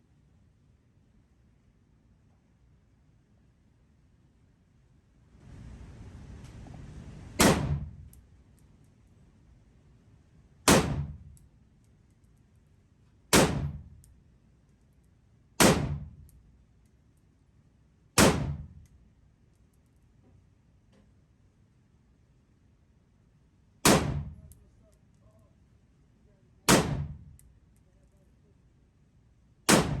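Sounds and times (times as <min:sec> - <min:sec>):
gunshots: 0:07.4 - 0:07.9, 0:10.7 - 0:11.2, 0:13.3 - 0:13.8, 0:15.6 - 0:16.1, 0:18.2 - 0:18.7, 0:23.8 - 0:24.4, 0:26.7 - 0:27.2, 0:29.7 - 0:30.0.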